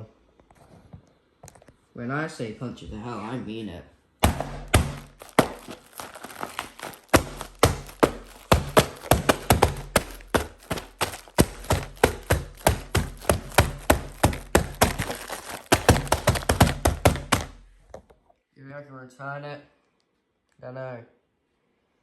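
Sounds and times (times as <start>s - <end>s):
fists punching cardboard box: 4.2s - 17.7s.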